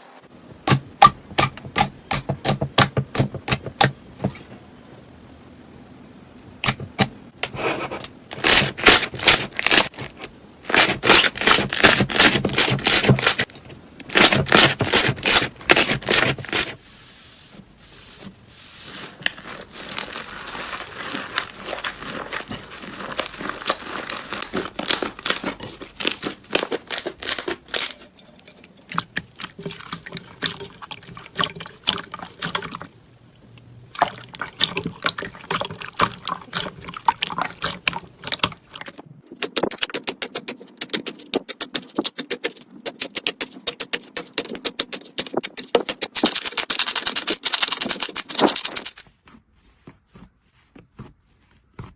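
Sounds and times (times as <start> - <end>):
slime popping and crackling: 8.4 - 10.1, 10.7 - 16.8, 19.2 - 30.7.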